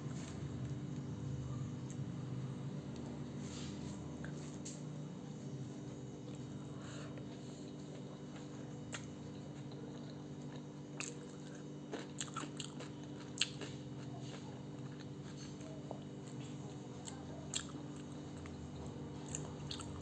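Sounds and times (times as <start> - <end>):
steady low hum: 0.0 - 20.0
person chewing food: 5.8 - 20.0.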